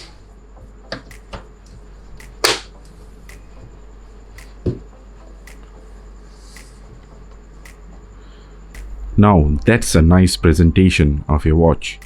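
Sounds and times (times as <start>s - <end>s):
sharp snap: 1.1s - 1.4s, 2.2s - 3.5s, 4.4s - 4.6s, 5.5s - 5.7s, 6.6s - 6.8s, 7.6s - 7.9s, 8.8s - 9.0s.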